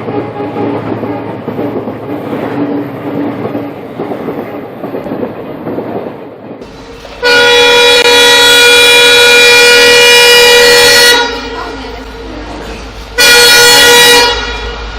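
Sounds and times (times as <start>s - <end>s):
train wheels clattering on rails: 0.0s - 7.4s, 11.4s - 14.0s
locomotive horn blaring: 7.2s - 12.0s, 13.2s - 14.9s.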